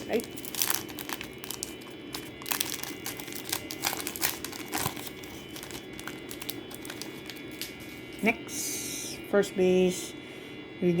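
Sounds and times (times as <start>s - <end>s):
foil wrapper crinkling: 0.0s - 8.2s.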